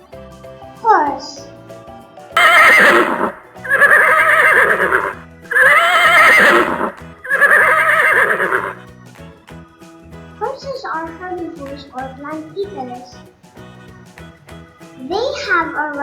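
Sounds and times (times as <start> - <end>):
soft background music: 0.0 - 16.0
horse whinnying: 2.4 - 8.8.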